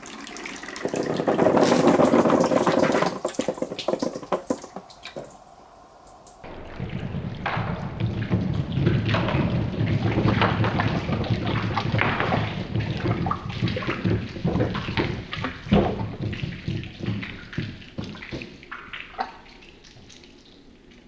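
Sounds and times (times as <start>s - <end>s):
marbles rolling and clattering: 0.0s - 6.4s
marbles splashing into water: 0.0s - 6.4s.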